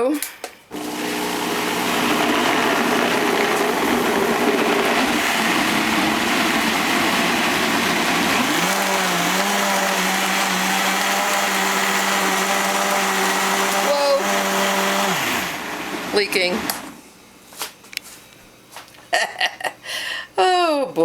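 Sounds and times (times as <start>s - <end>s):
blender motor running: 0.7s - 17.0s.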